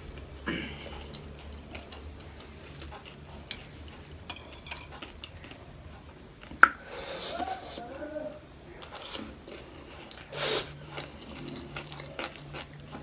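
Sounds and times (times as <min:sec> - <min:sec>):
crunchy food being eaten: 0:00.2 - 0:05.7, 0:08.5 - 0:13.0.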